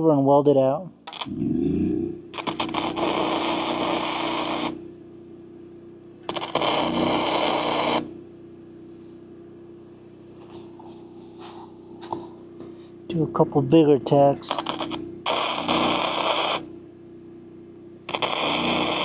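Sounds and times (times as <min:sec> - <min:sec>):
welder humming: 0:00.8 - 0:04.9, 0:06.2 - 0:08.2, 0:14.0 - 0:16.9, 0:18.0 - 0:19.0
welding arc crackling: 0:01.0 - 0:01.7, 0:02.3 - 0:04.8, 0:06.2 - 0:08.2, 0:14.4 - 0:16.7, 0:18.1 - 0:19.0.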